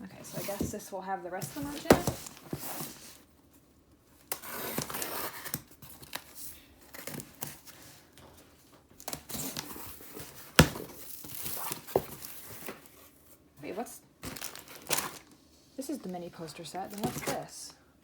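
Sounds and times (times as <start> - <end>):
packaging tearing and crinkling: 14.2 - 15.3.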